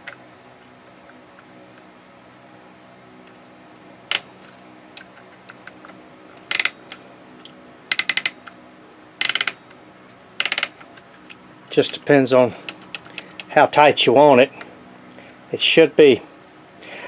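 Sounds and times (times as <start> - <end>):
ratchet clicking in rapid bursts: 6.4 - 6.9, 7.9 - 8.5, 9.2 - 9.6, 10.4 - 10.9.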